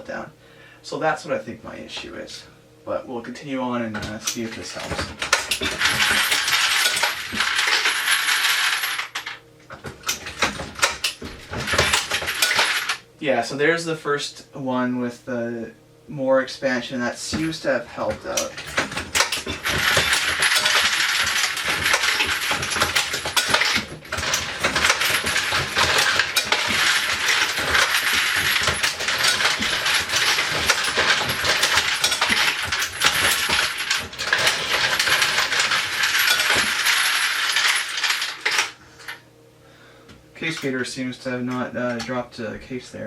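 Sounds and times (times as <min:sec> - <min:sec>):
metallic clatter of brass cases: 0:04.0 - 0:13.0, 0:17.3 - 0:39.2.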